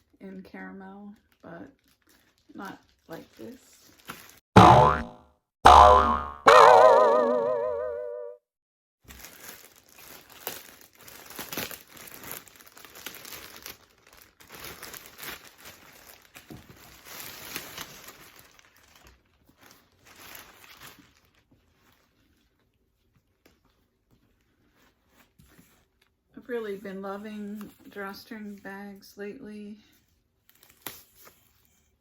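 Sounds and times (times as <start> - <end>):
wrapping material crinkling: 1.2 - 4.4, 9.1 - 25.6.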